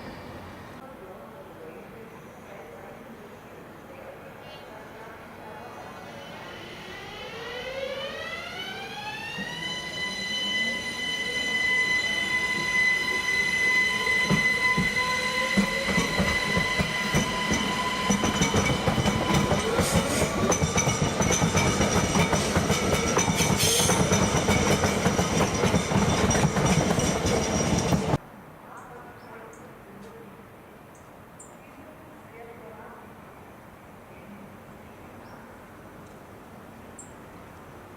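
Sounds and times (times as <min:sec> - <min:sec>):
high-pitched train whine: 0:04.7 - 0:28.2
train wheels rumbling and clattering: 0:11.7 - 0:28.2.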